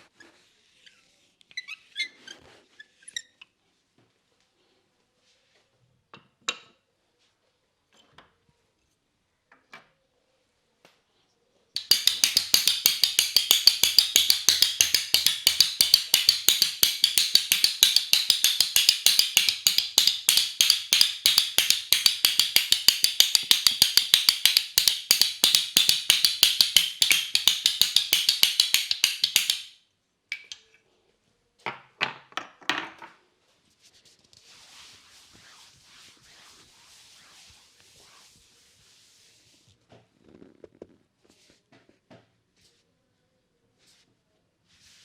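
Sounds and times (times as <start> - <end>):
hands tapping on a head: 11.8 - 29.8.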